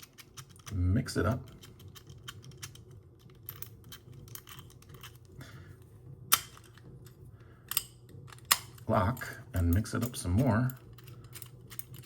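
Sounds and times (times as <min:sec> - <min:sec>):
padlock wheels clicking: 0:00.0 - 0:05.3, 0:06.3 - 0:12.0.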